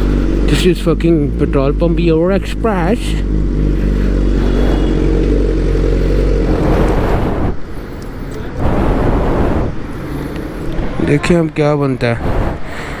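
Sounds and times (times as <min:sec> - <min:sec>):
motorcycle engine idling: 0:00.0 - 0:08.6.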